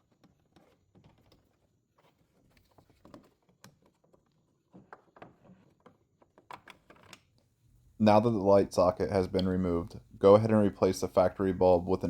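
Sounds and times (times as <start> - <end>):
faint plastic clicks and knocks: 0.0 - 7.6.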